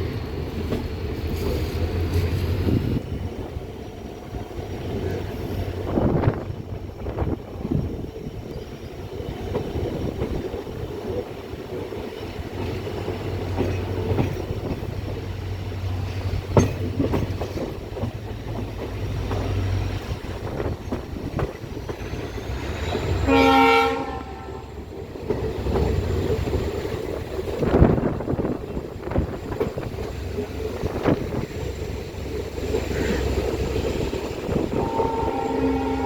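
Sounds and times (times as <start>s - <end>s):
train rumble and wheel clatter: 0.0s - 36.0s
train horn blast: 23.2s - 24.8s, 34.5s - 36.0s.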